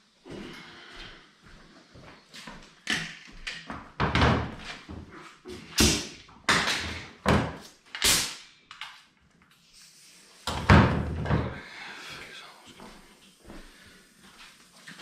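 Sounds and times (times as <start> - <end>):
pneumatic nailer shots: 8.0 - 8.5.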